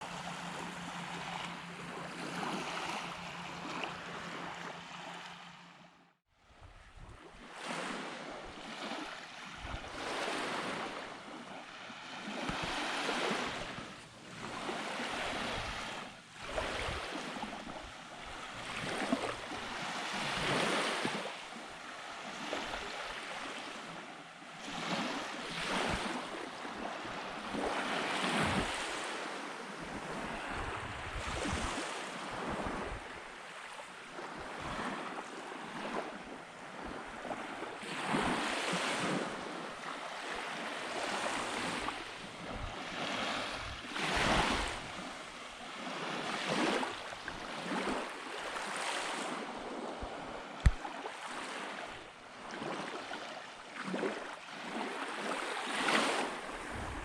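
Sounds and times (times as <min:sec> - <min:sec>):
wind buffeting microphone: 0:30.0 - 0:33.2, 0:56.5 - 0:57.0.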